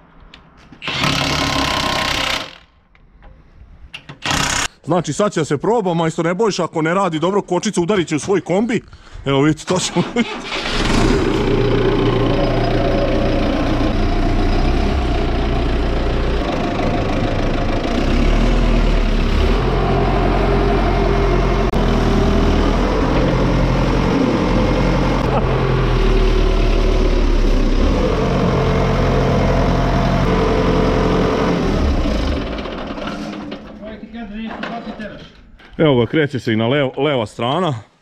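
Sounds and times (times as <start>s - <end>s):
tractor diesel engine running: 10.2s - 33.9s.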